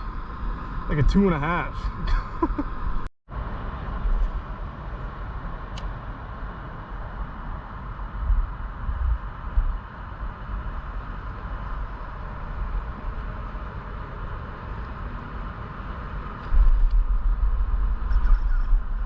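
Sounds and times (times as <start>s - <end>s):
wind buffeting microphone: 8.0s - 19.0s.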